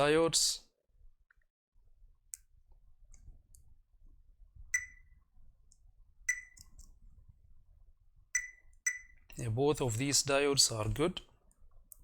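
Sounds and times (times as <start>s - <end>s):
short high multimeter beeps: 4.8s - 5.1s, 6.3s - 6.6s, 8.4s - 9.2s.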